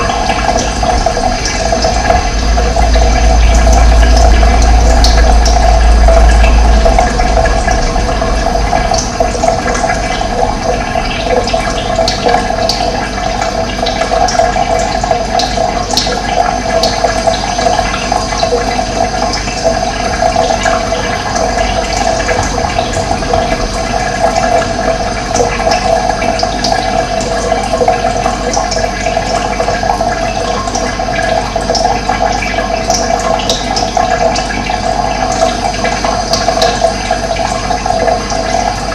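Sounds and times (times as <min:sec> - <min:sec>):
deep low rumble: 0:00.0 - 0:13.0, 0:20.6 - 0:26.4
running water rushing and gurgling: 0:00.0 - 0:38.9.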